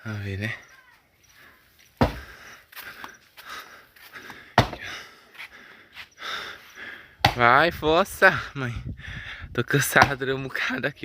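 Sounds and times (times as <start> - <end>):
axe chopping log: 2.0 - 2.3, 4.6 - 4.9, 7.2 - 7.4, 9.9 - 10.2.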